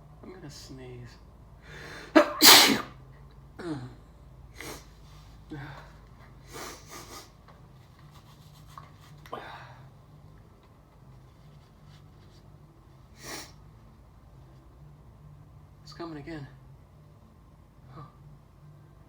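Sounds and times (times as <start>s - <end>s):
man sneezing: 2.0s - 3.0s
quiet breaths: 3.6s - 7.4s, 8.1s - 10.4s.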